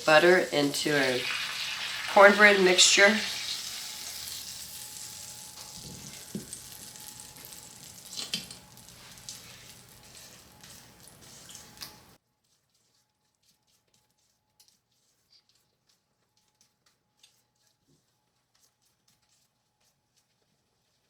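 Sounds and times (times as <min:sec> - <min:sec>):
butter sizzling: 0:00.0 - 0:12.2.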